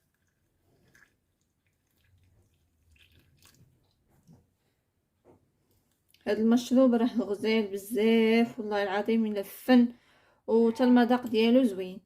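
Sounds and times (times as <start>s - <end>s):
water being poured: 0.0s - 4.5s
light water drips: 0.0s - 4.8s, 5.6s - 6.4s.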